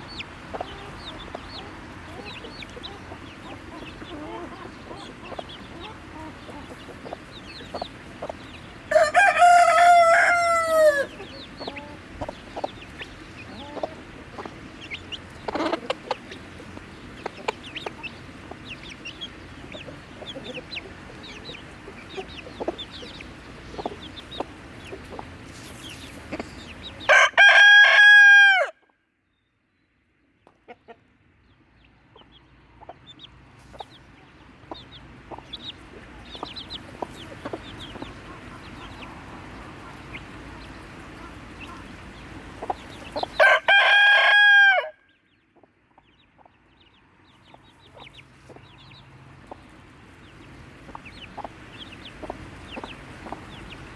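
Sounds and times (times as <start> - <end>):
chickens clucking: 0.0 - 28.4, 30.4 - 44.7, 45.3 - 53.9
rooster crowing: 8.9 - 11.2, 27.1 - 28.8, 43.4 - 45.1.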